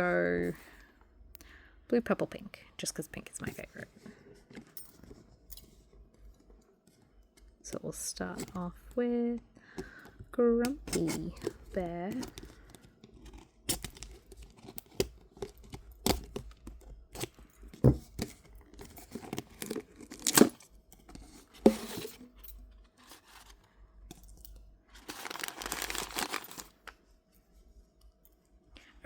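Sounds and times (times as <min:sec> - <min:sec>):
packaging snapping and rustling: 0:10.7 - 0:20.6, 0:25.0 - 0:27.0
packaging tearing: 0:19.0 - 0:20.6, 0:25.0 - 0:26.9.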